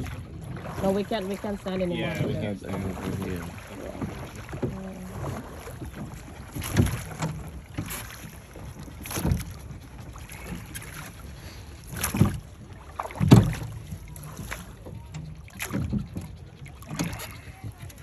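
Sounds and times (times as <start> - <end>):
oars splashing in water: 0.0 - 18.0.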